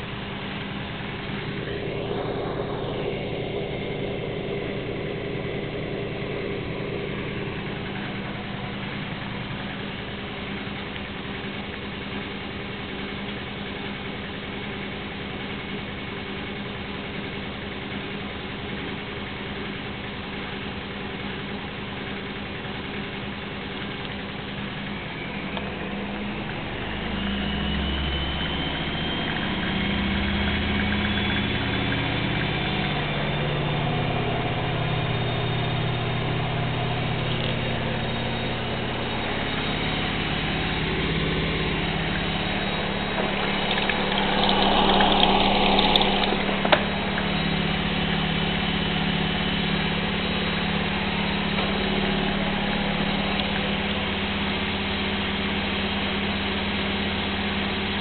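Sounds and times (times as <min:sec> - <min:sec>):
washing machine spinning: 0:00.0 - 0:58.0.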